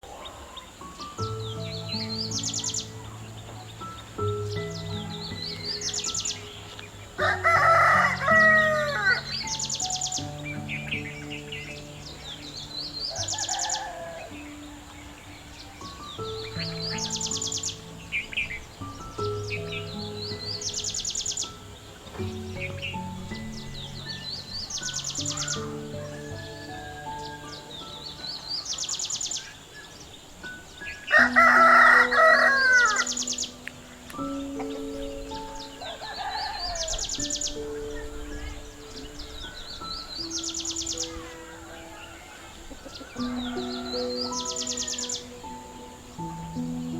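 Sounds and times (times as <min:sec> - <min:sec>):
small birds chirping: 0:00.0 - 0:46.9
rooster crowing: 0:07.2 - 0:09.6, 0:13.0 - 0:14.5, 0:25.3 - 0:27.8, 0:31.1 - 0:33.3, 0:35.7 - 0:37.4, 0:41.0 - 0:46.0.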